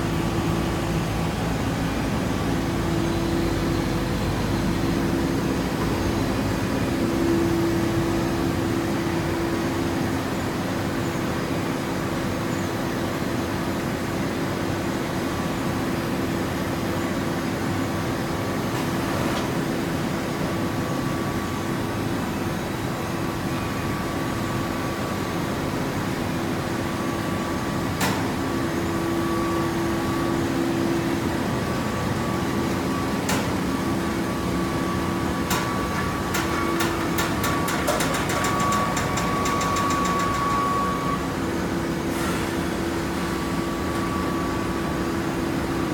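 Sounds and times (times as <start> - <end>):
baling press mechanical hum: 0.0 - 45.9
machine whine: 20.4 - 45.9.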